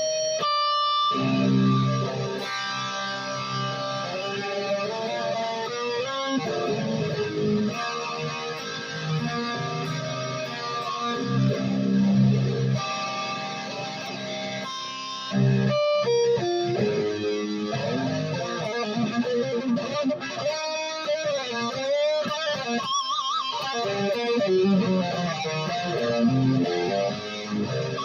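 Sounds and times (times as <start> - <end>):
electric guitar melodic lines: 0.0 - 28.0.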